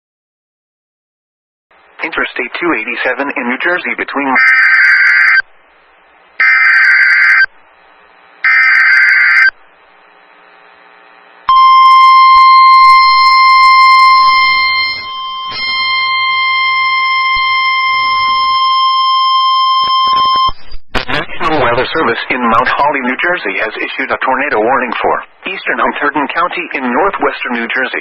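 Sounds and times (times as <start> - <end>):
screeching digital header bursts: 4.4 - 5.4, 6.4 - 7.5, 8.4 - 9.5, 11.5 - 18.8
steady warning alarm tone: 4.4 - 5.4, 6.4 - 7.5, 8.4 - 9.6, 11.5 - 20.5.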